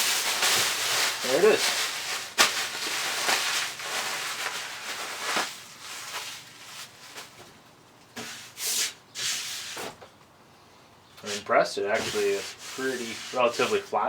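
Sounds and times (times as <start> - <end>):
hands rubbing on saw table: 11.3 - 13.9.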